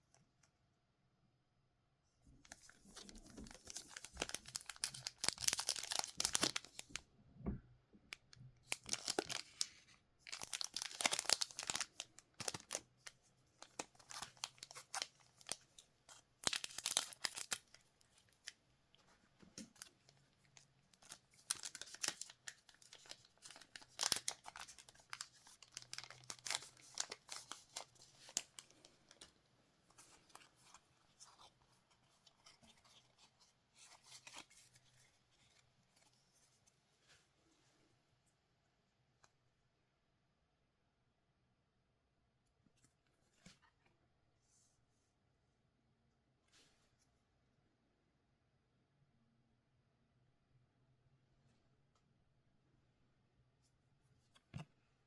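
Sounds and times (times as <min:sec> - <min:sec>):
wrappers tearing and crackling: 0:03.0 - 0:06.8, 0:08.7 - 0:09.7, 0:10.3 - 0:12.8, 0:16.4 - 0:17.7, 0:21.0 - 0:28.7.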